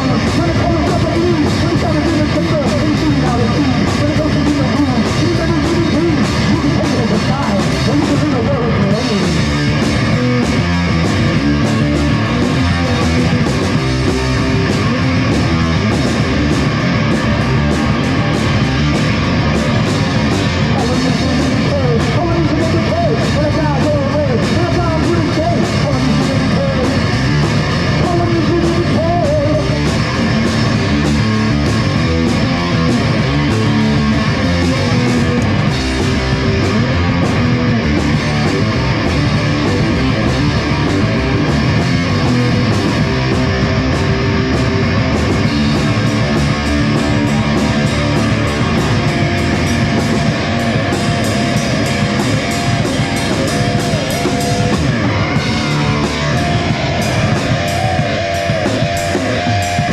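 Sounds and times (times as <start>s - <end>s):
rock band playing: 0.0s - 59.9s.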